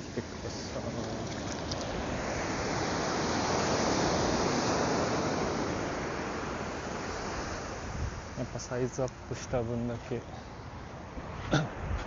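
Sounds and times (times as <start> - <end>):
surf breaking on beach: 0.0 - 9.6.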